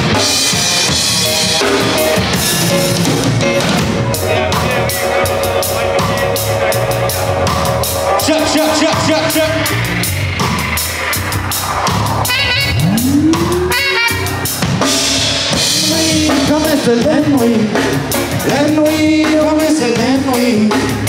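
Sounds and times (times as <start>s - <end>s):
drum kit beat: 0.0s - 21.0s
live band playing: 0.0s - 21.0s
note sliding upward in pitch: 4.8s - 14.5s.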